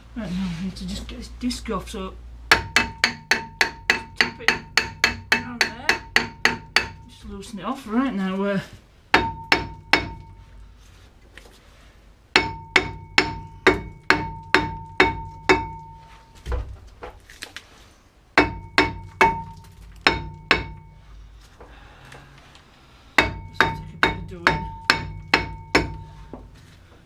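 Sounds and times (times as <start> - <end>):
hammer striking metal brake disc: 2.5 - 7.2, 9.2 - 10.5, 12.4 - 16.4, 18.4 - 21.0, 23.2 - 26.5.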